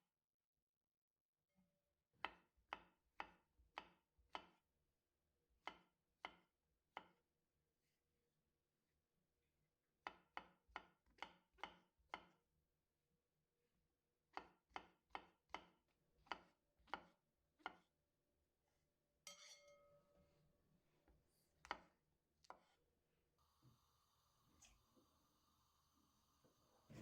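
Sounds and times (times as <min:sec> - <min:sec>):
knife chopping on cutting board: 0:02.2 - 0:04.6, 0:05.6 - 0:07.2, 0:10.0 - 0:12.4, 0:14.3 - 0:18.0, 0:21.6 - 0:22.8.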